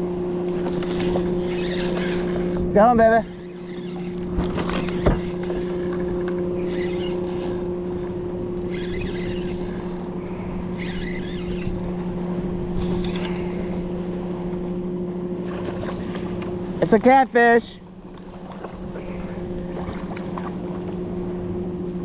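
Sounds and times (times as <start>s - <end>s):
boat motor humming: 0.0s - 22.0s
fishing reel and line noise: 0.5s - 13.9s.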